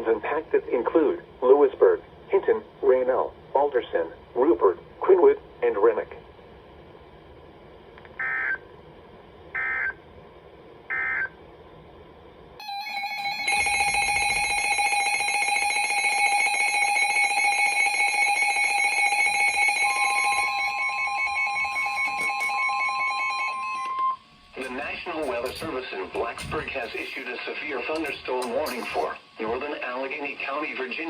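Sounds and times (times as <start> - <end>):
steady attention signal tone: 12.6 - 29.2.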